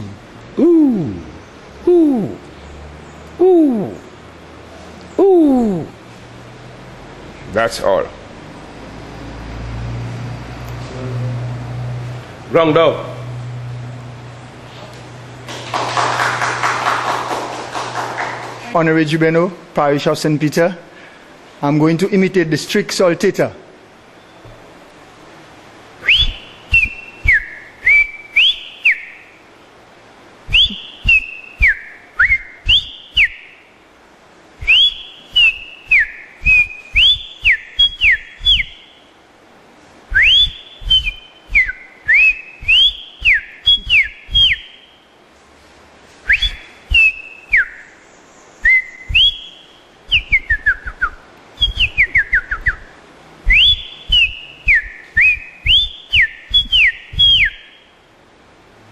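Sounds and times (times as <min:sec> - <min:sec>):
person whistling bird song: 0:00.0 - 0:02.5, 0:26.0 - 0:29.2, 0:30.5 - 0:33.6, 0:34.6 - 0:39.0, 0:40.1 - 0:44.9, 0:46.2 - 0:47.9, 0:48.6 - 0:52.9, 0:53.5 - 0:57.8.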